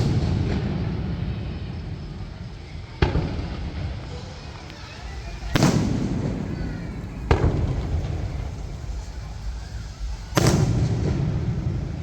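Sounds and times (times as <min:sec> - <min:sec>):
firework shell bursts: 0:00.0 - 0:12.0
low rumble: 0:05.0 - 0:12.0.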